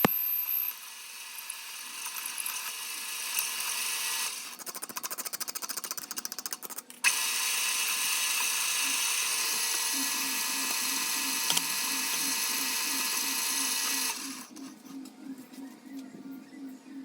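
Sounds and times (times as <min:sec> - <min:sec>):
machine tool whining: 0:07.0 - 0:15.1.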